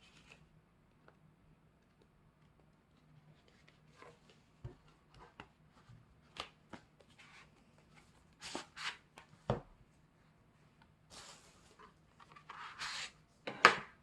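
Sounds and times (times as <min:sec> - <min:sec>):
packaging rustling and sliding: 0:11.1 - 0:13.2.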